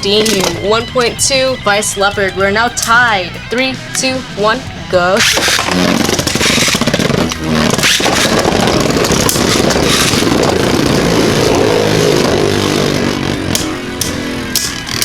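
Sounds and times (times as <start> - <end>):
spinning tops whirring: 5.2 - 15.0
spinning tops clicking on hits: 13.5 - 15.0.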